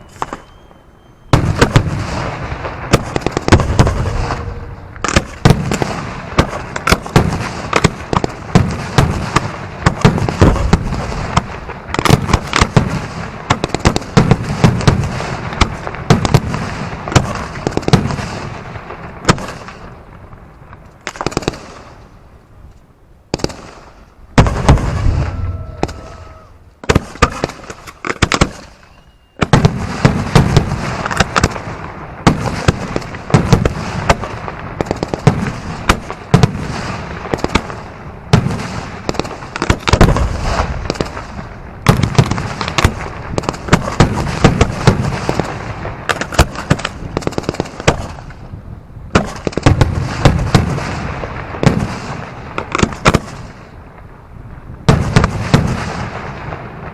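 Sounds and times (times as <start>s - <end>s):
fireworks bangs and booms: 0.0s - 56.9s.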